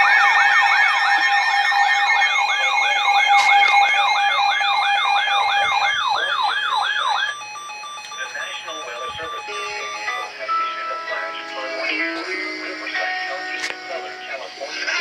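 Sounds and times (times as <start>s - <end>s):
siren alarm sweeping up and down: 0.0s - 10.5s
steady tones: 1.6s - 15.0s.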